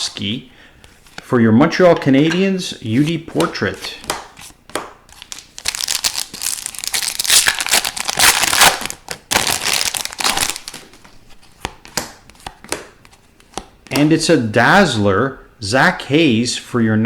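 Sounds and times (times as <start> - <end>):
foil wrapper crinkling: 5.1 - 11.0.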